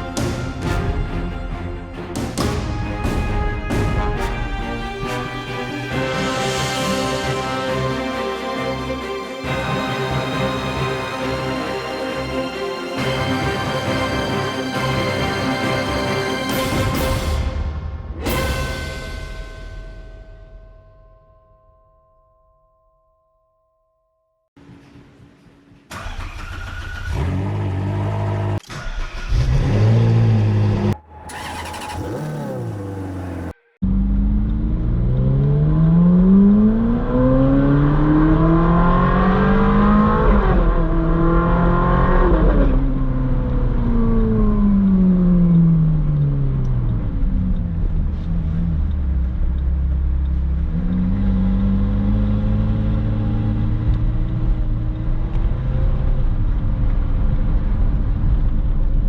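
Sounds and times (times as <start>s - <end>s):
sports car engine revving: 29.3s - 56.5s.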